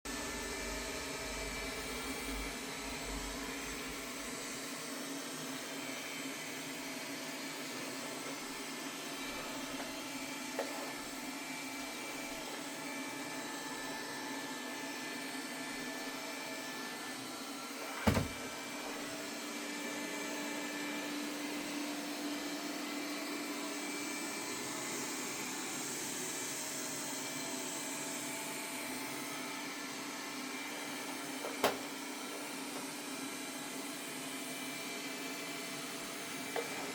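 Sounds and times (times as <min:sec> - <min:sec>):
robot vacuum running: 0:00.1 - 0:36.9.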